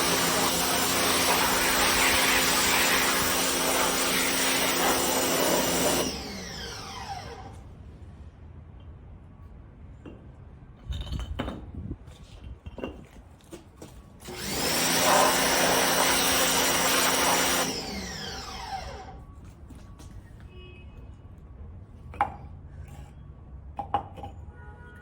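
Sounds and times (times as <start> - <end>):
pressure washer motor: 0.0 - 7.6, 14.2 - 19.2.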